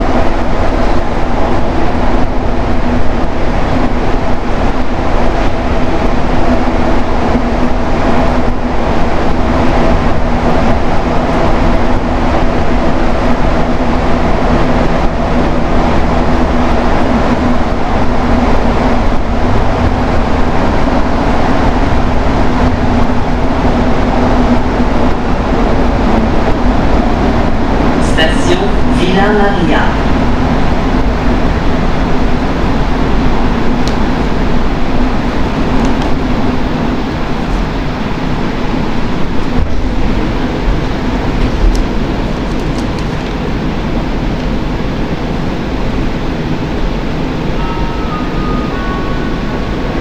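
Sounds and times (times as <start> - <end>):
subway train rumble: 0.0 - 50.0
humming tones: 46.3 - 50.0.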